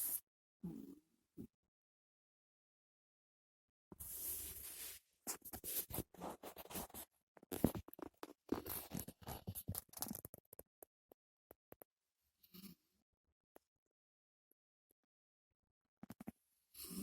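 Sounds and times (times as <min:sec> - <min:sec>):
scratching and rustling: 0:04.4 - 0:10.4.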